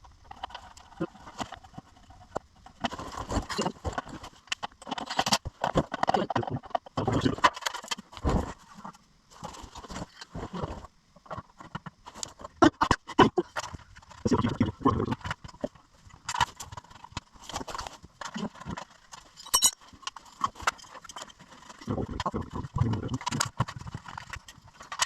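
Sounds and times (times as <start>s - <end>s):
hand tools clinking on metal: 19.4s - 19.8s.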